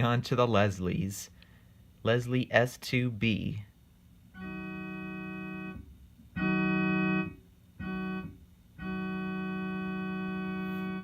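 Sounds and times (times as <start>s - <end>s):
organ-like keyboard horn blasts: 4.3s - 11.0s.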